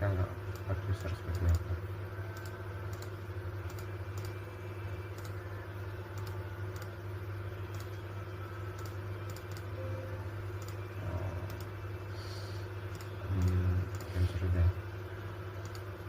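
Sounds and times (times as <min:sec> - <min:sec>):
steady low hum: 0:00.0 - 0:16.0
computer keyboard clicks: 0:02.4 - 0:04.4, 0:08.8 - 0:09.7.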